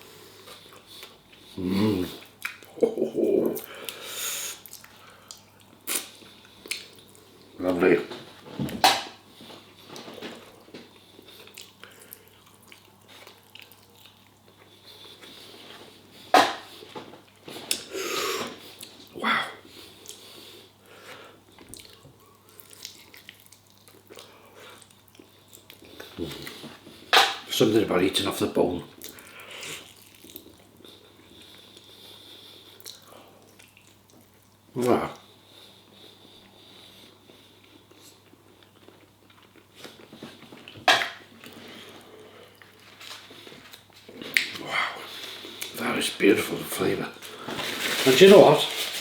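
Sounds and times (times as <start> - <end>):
wet chewing and mouth clicks: 0.5 - 2.8, 4.6 - 7.5, 10.8 - 15.7, 21.5 - 26.6, 28.9 - 34.6, 42.5 - 45.8
soft mouth sounds: 0.5 - 7.2.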